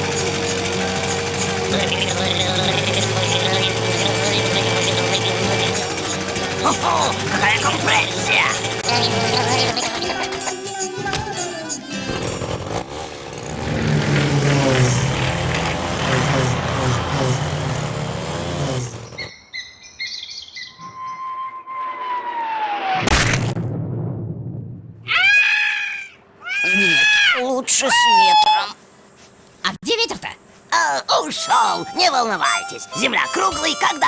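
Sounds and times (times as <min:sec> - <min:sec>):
cartoon music: 0:00.0 - 0:11.6, 0:31.1 - 0:34.0
whistle gliding downward: 0:20.8 - 0:23.1
crash: 0:21.9 - 0:25.1.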